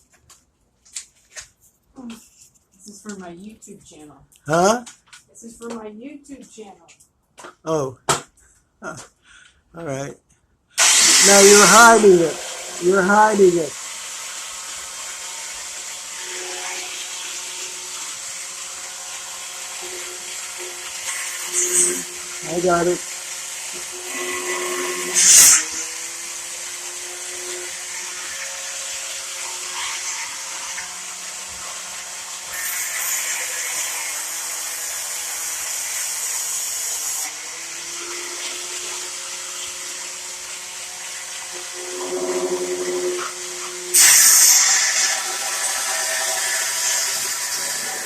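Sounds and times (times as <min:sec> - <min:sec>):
electric grinder running: 0:10.8 - 0:48.0
grinder grinding against metal: 0:10.8 - 0:48.0.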